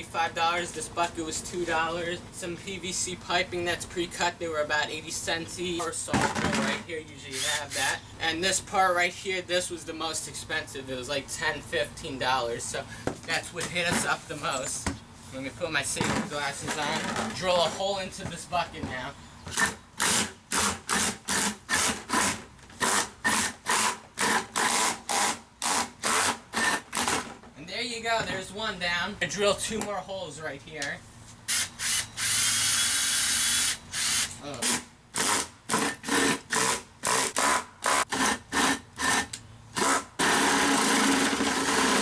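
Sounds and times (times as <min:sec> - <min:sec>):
power drill grinding through plastic: 0:31.5 - 0:42.0.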